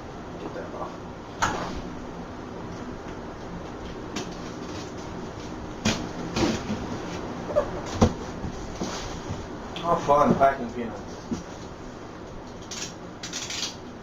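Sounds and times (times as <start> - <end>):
cardboard knocks and scrapes: 7.9 - 9.5.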